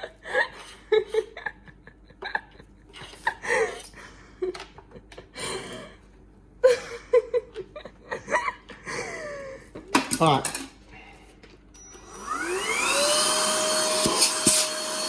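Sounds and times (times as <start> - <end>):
person laughing and gasping: 0.0 - 9.9.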